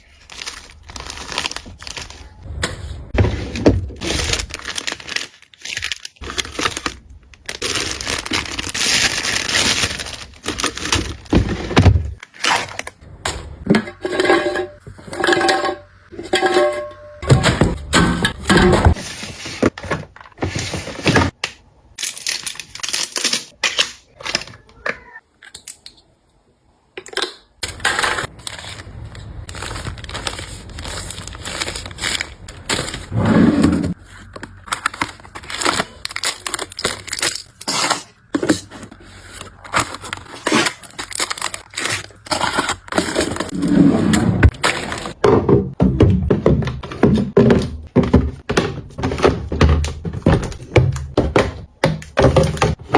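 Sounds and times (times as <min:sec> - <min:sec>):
wrapping crinkling and tearing: 0:00.0 - 0:02.5, 0:04.0 - 0:11.4, 0:22.0 - 0:24.4, 0:27.6 - 0:33.2, 0:33.9 - 0:43.6
containers knocking and clicking: 0:44.6 - 0:52.9.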